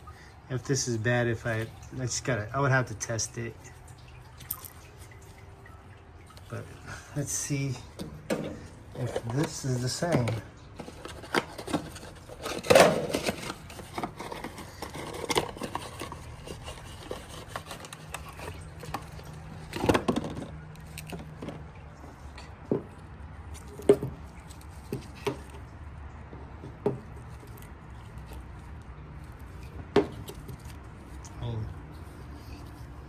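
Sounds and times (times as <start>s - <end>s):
small parts clicking and knocking: 4.4s - 5.0s.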